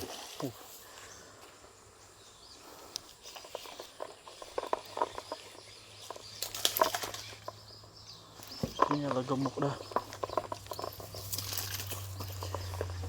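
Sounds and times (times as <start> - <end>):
fish thrashing on ground: 9.9 - 13.0.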